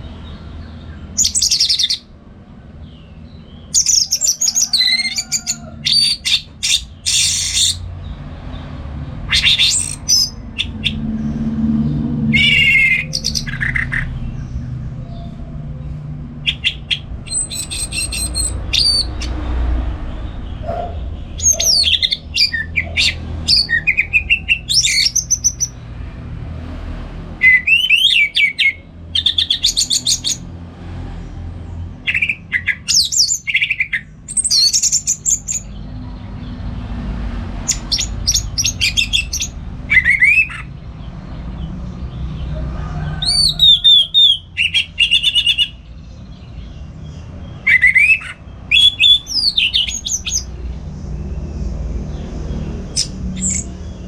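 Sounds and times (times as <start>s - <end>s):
low background rumble: 0.0s - 26.8s
bird singing whistled song: 1.2s - 2.0s, 3.7s - 7.8s, 9.3s - 11.0s, 12.3s - 14.1s, 16.4s - 19.3s, 21.4s - 25.7s, 27.4s - 30.4s, 32.1s - 35.7s, 37.7s - 40.7s, 43.2s - 45.8s, 47.6s - 50.5s, 53.0s - 53.7s.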